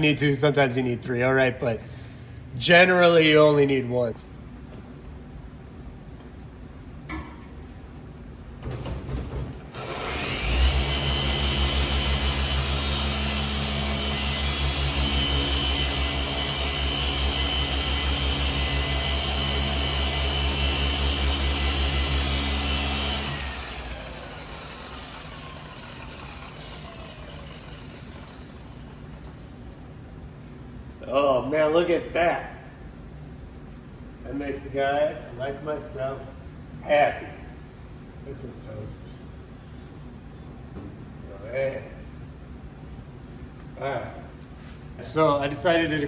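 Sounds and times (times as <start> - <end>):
polisher humming and whining: 9.8 - 29.4.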